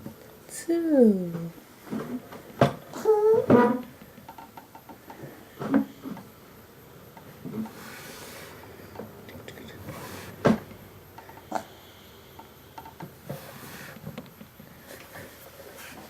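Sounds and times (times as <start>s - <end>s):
rubbing of handled objects: 7.4s - 8.8s, 9.6s - 10.8s, 12.9s - 16.0s.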